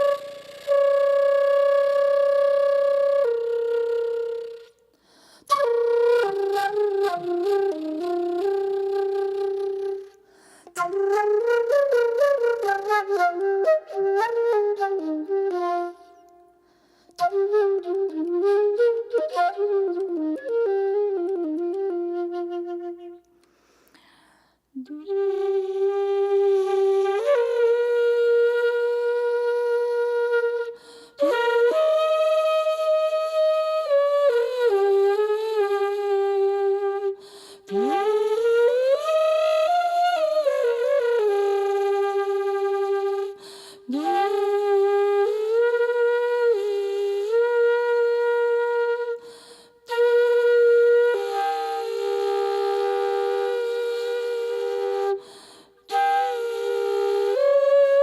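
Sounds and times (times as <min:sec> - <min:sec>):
flute-like wind instrument melody: 0:00.0 - 0:23.5, 0:24.8 - 0:58.0
wordless solo melody: 0:10.8 - 0:16.5, 0:17.2 - 0:23.4.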